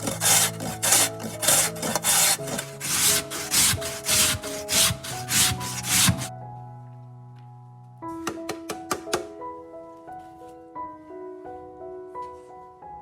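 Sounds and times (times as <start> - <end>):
rhythmic rasping strokes: 0.0 - 6.3.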